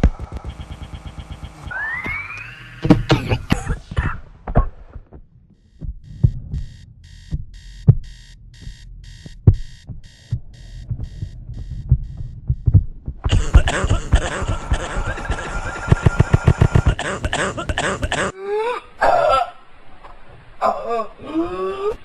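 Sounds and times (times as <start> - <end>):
heartbeat-like thumps: 2.8 - 18.2
high beeping pulse: 5.6 - 14.2.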